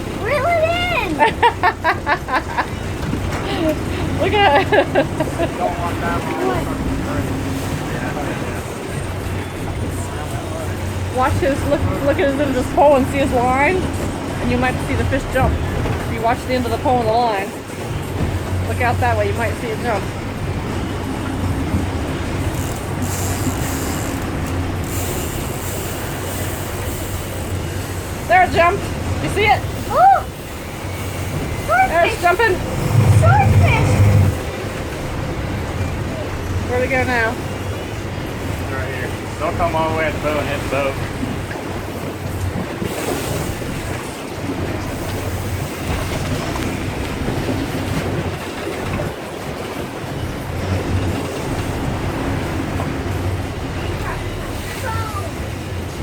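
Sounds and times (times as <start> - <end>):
boat engine humming: 0.0 - 56.0
wind and water rushing: 0.0 - 56.0
wind noise: 31.5 - 34.6.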